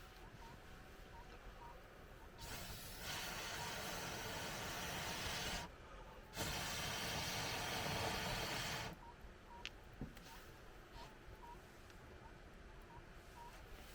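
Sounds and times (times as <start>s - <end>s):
air blowing through tube into fire: 2.4s - 5.7s, 6.3s - 9.0s.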